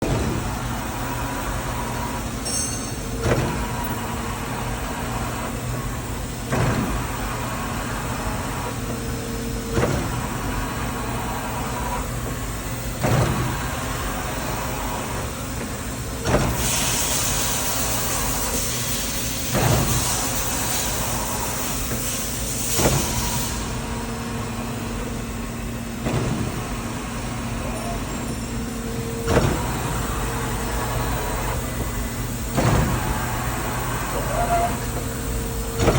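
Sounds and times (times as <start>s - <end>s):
machine humming: 0.0s - 35.9s
machine knocking: 11.2s - 18.7s, 19.4s - 25.2s, 25.8s - 35.9s.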